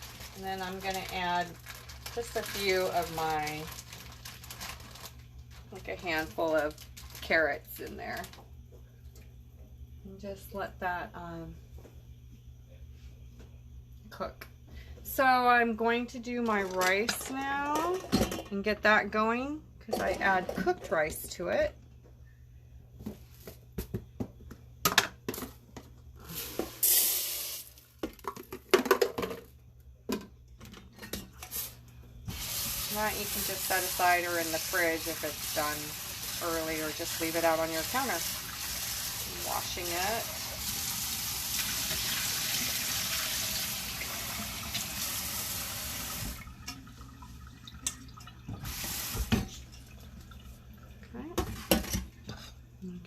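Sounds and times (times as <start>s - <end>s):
pots and utensils clattering: 16.4s - 18.7s
kitchen tap running: 26.7s - 27.8s, 32.2s - 51.3s.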